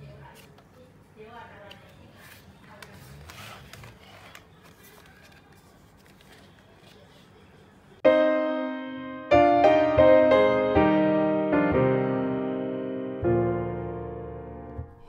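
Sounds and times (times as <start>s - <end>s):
piano chord ringing: 8.0s - 15.0s.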